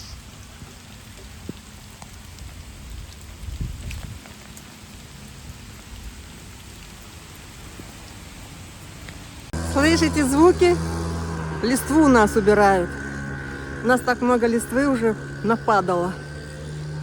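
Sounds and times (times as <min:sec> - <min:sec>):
raindrops ticking: 0:00.0 - 0:17.0
steady rain falling: 0:00.0 - 0:17.0
low rumble: 0:09.5 - 0:17.0.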